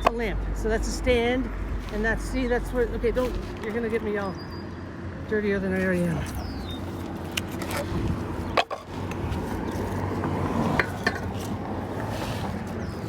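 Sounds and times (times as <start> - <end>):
steady low rumble: 0.0 - 13.0
scrap metal clanking: 10.6 - 12.8.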